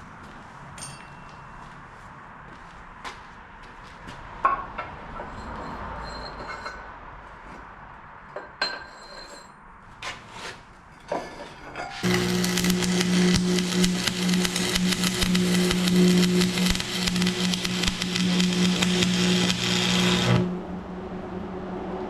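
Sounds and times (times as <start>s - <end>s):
welding arc crackling buzz: 12.0s - 20.7s.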